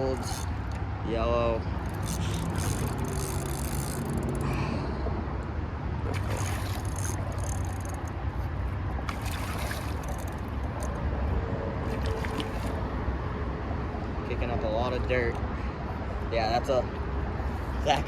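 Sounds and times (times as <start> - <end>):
water splashing: 6.1 - 8.1, 9.0 - 10.8, 11.8 - 12.8.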